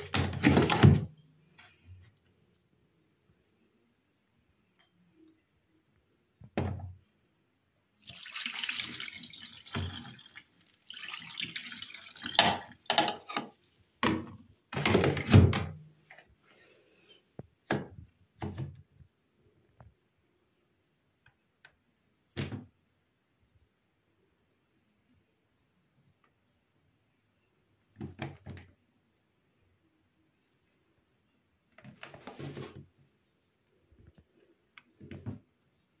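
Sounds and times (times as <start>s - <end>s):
water running from a tap: 8.0s - 12.8s
knocks and clatters at sink: 12.2s - 15.8s.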